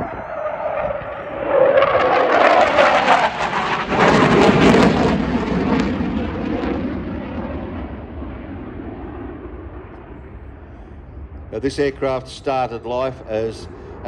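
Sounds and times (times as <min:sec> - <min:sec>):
jet roar passing overhead: 0:00.0 - 0:14.0.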